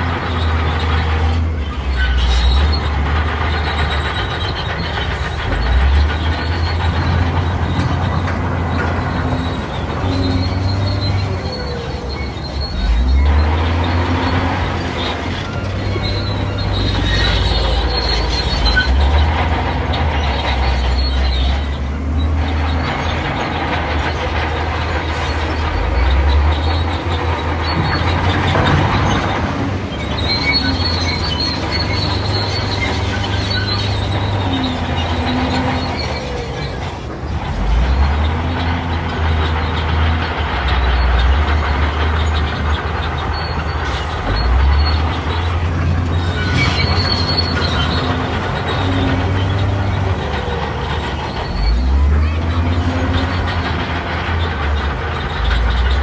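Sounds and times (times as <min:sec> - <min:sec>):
bulldozer diesel engine under load: 0:00.0 - 0:56.0
steel tracks clanking and squealing: 0:00.0 - 0:56.0.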